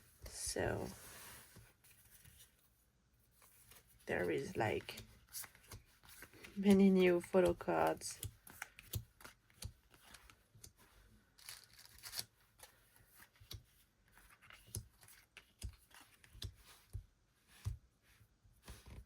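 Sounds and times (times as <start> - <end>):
light taps and clicks of cards: 4.8 - 10.9.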